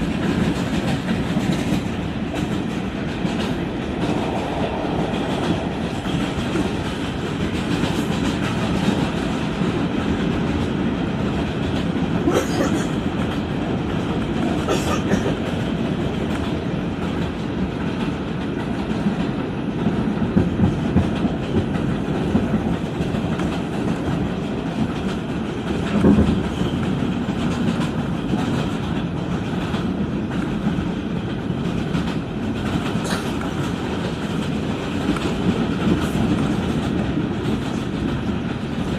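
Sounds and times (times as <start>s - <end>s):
subway wheels rumbling on track: 0.0s - 38.9s.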